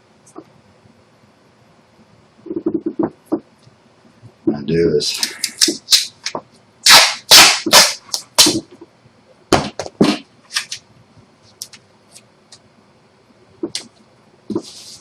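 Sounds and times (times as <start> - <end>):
masking tape tearing: 6.8 - 8.6.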